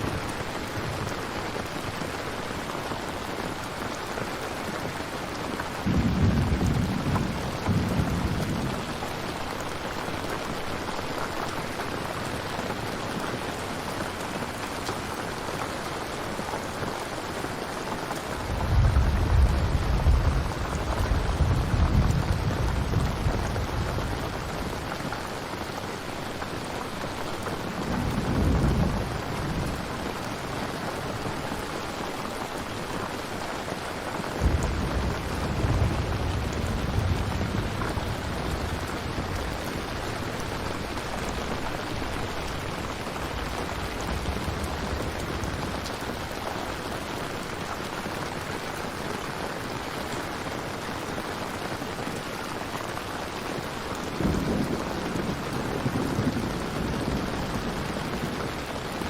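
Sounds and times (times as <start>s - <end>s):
steady rain falling: 0.0s - 59.0s
thunder rumbling: 5.8s - 10.7s, 18.2s - 25.2s, 27.4s - 31.7s, 34.4s - 46.4s, 54.1s - 59.0s.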